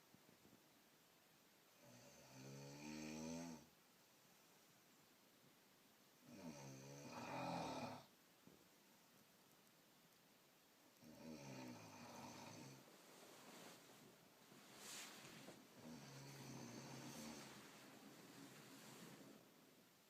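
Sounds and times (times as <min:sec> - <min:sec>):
woman snoring: 0:01.8 - 0:03.7, 0:06.3 - 0:08.1, 0:11.0 - 0:12.8, 0:15.8 - 0:17.6
quiet breathing: 0:10.9 - 0:19.9.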